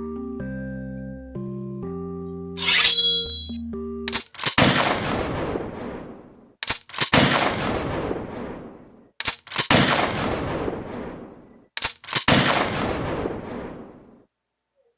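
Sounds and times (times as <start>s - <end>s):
gunshot cracks: 4.6s - 6.2s, 7.1s - 8.8s, 9.7s - 11.4s, 12.1s - 14.0s
echoing gunshot blast: 4.6s - 6.3s, 7.1s - 8.9s, 9.7s - 11.6s, 12.3s - 14.1s.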